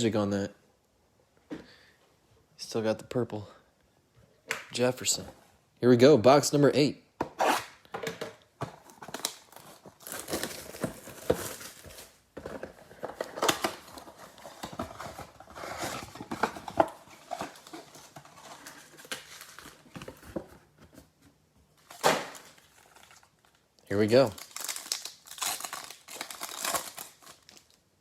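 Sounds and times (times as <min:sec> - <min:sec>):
plastic wrapping crinkling and tearing: 0:08.8 - 0:20.0, 0:21.8 - 0:27.8.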